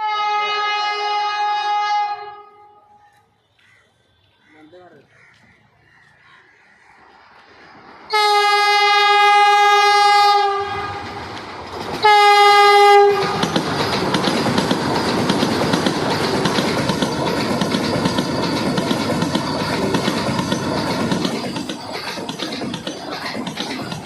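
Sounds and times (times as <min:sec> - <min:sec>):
train horn blasts: 0:00.0 - 0:03.0, 0:08.1 - 0:11.4, 0:12.0 - 0:13.6
train rushing past: 0:06.2 - 0:24.0
wheels clacking on rail joints: 0:10.8 - 0:24.0.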